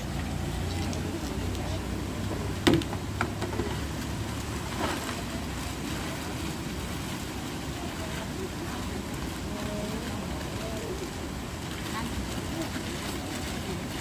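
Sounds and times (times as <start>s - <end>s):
low outdoor rumble: 0.0s - 14.0s
sharp knocks: 2.6s - 3.6s.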